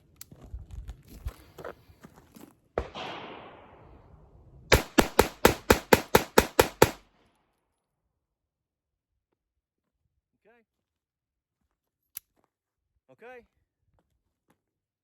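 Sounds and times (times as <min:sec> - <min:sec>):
pistol shots: 0:02.8 - 0:07.1.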